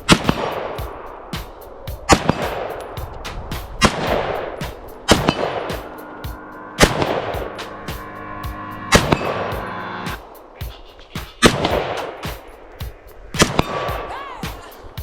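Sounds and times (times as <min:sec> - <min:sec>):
gunshots with echo: 0:00.0 - 0:10.2, 0:11.4 - 0:12.5, 0:13.4 - 0:14.1
background music with ticking: 0:00.0 - 0:15.0.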